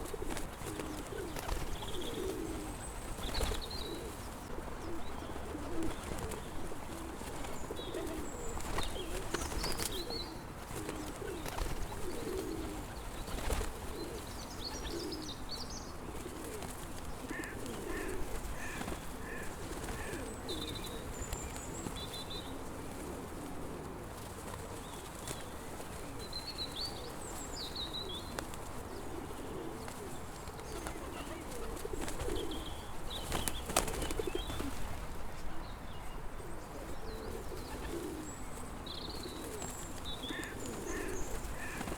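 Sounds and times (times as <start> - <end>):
small birds chirping: 0.0 - 22.6, 24.5 - 41.9
pigeons cooing: 0.0 - 35.0, 36.4 - 41.9.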